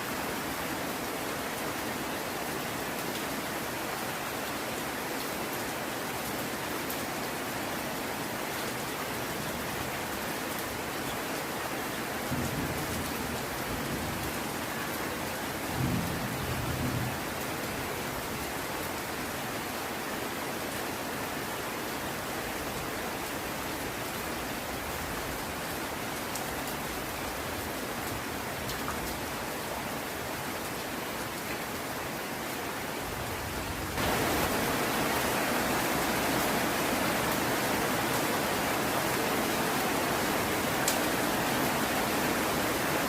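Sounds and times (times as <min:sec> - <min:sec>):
heavy rain: 0:00.0 - 0:43.0.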